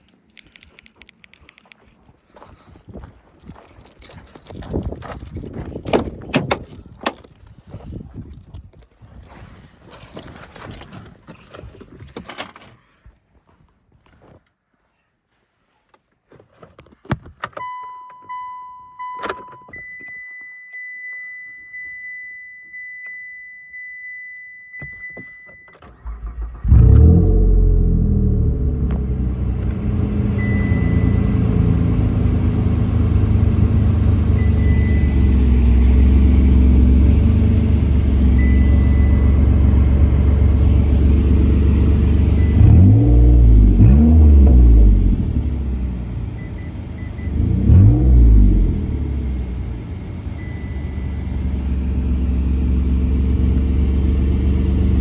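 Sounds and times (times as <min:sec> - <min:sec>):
clicks: 0:00.0 - 0:02.1
car engine starting and idling: 0:25.7 - 0:55.0
engine revving: 0:26.2 - 0:55.0.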